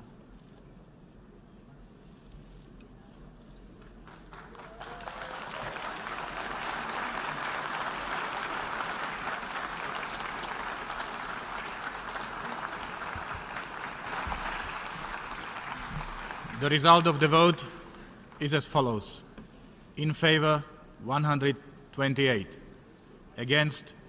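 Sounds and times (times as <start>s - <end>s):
audience applause: 4.0s - 18.4s.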